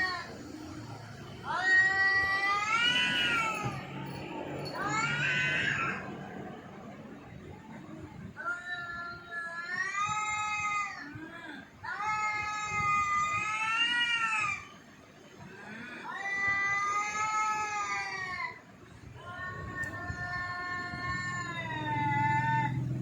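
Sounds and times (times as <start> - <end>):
cat yowling: 1.4 - 4.0, 4.6 - 6.2, 19.2 - 23.0.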